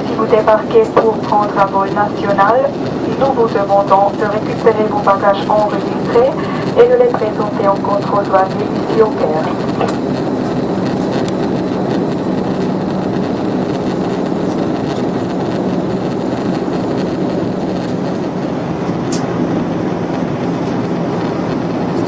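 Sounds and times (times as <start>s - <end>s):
airliner rumbling on the ground: 0.0s - 22.0s.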